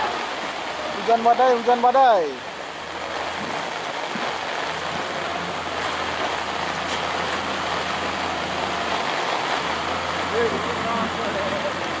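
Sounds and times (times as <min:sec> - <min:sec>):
heavy rain hissing: 0:00.0 - 0:12.0
wind: 0:00.0 - 0:12.0
low engine hum: 0:02.4 - 0:12.0.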